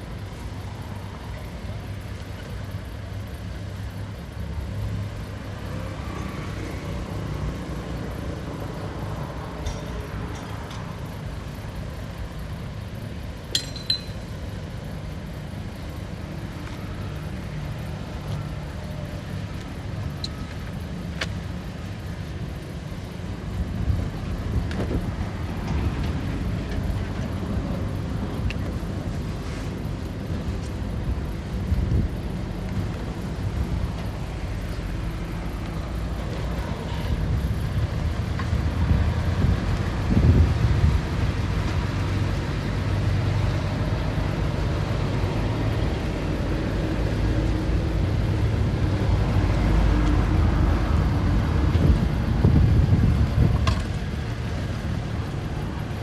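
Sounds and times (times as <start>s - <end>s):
sharp metallic clinks: 13.4s - 14.7s.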